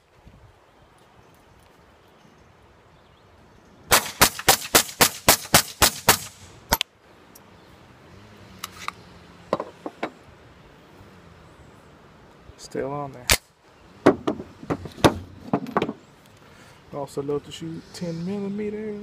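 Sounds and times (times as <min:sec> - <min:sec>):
suppressed pistol shots: 0:03.9 - 0:06.8.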